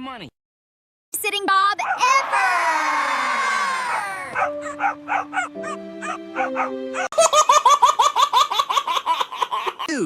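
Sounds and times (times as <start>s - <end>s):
cartoon puppy voices howling: 1.8s - 4.4s
laughter: 7.1s - 9.9s.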